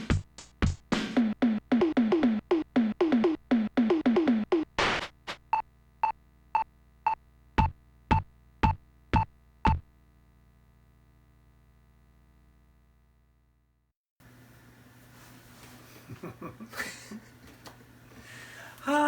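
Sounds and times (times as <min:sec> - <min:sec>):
kick drum: 0:00.0 - 0:04.9, 0:07.6 - 0:09.9
tom drum fill: 0:00.0 - 0:05.2
steady drum beat: 0:00.0 - 0:05.6, 0:07.6 - 0:09.9.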